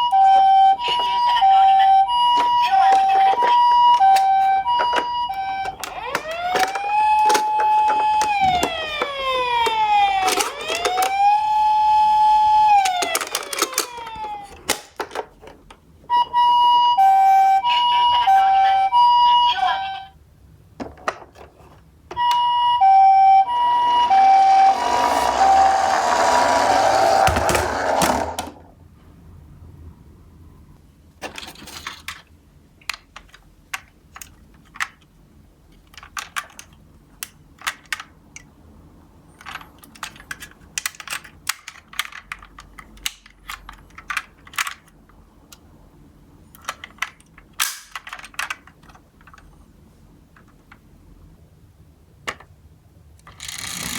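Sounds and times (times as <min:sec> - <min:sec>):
two-tone ambulance siren: 0:00.0 - 0:14.6, 0:16.1 - 0:20.1, 0:22.2 - 0:28.2
toy cars clicking and knocking: 0:02.3 - 0:15.8, 0:23.9 - 0:28.6, 0:31.2 - 0:35.1, 0:35.7 - 0:38.5, 0:39.4 - 0:45.6, 0:46.5 - 0:49.5, 0:53.2 - 0:53.9
toy cars rolling down a slope: 0:05.7 - 0:15.0, 0:23.6 - 0:28.7, 0:53.3 - 0:53.9.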